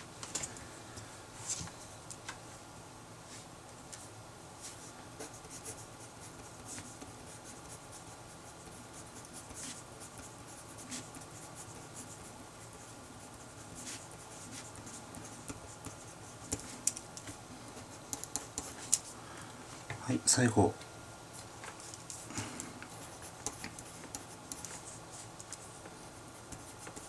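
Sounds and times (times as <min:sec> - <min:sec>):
pen scratching on paper: 0:05.2 - 0:16.8.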